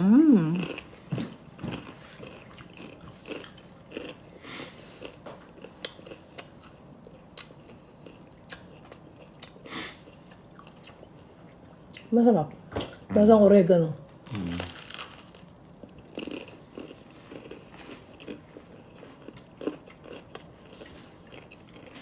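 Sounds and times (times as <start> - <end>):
crusty bread crunching: 14.3 - 20.5.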